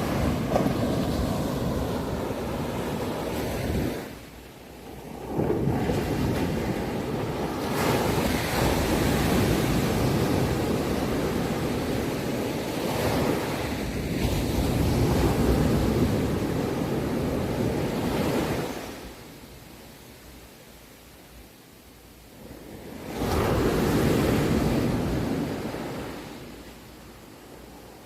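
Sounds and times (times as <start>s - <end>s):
sea waves breaking: 0.0s - 19.0s.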